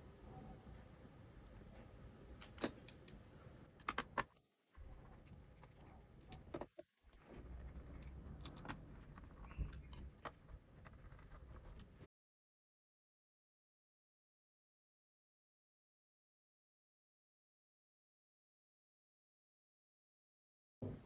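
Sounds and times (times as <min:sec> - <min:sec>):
small hard parts clicking: 0:03.8 - 0:12.1.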